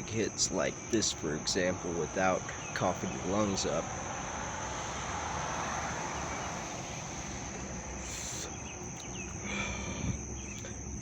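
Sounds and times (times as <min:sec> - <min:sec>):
steady high-pitched tone: 0:00.0 - 0:11.0
breathy hiss of inhaling: 0:04.6 - 0:08.6, 0:09.4 - 0:10.7.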